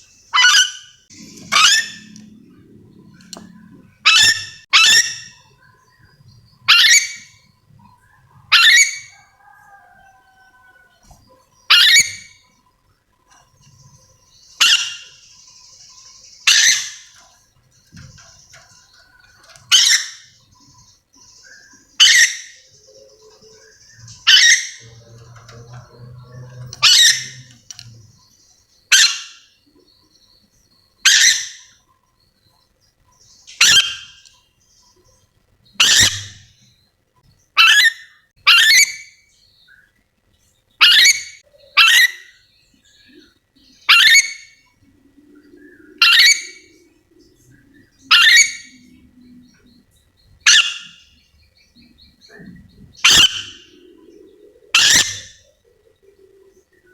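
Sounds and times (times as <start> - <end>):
lorikeet shrill screeches: 0.3 - 2.2, 4.0 - 5.4, 26.8 - 27.5, 33.6 - 34.2, 35.8 - 36.5, 37.6 - 39.1, 40.8 - 42.3, 43.9 - 44.5, 48.1 - 48.7, 50.5 - 51.0, 53.0 - 53.8, 54.8 - 55.4.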